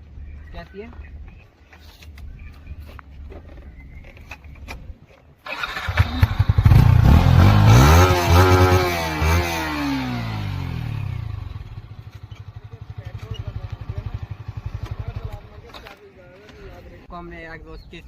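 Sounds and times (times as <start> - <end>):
motorcycle engine revving: 5.5 - 15.9.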